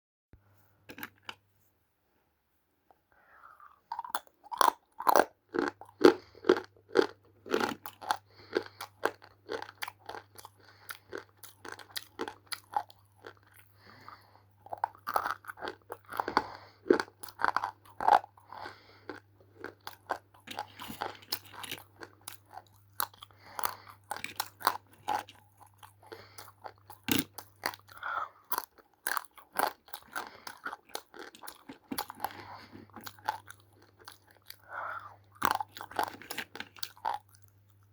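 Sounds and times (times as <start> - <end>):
crunchy chewing: 3.6 - 37.9.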